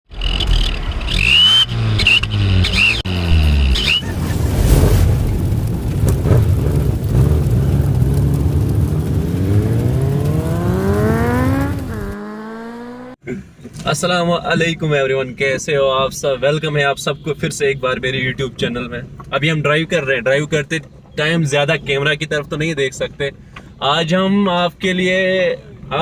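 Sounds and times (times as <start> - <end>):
car engine revving: 0.1 - 13.2.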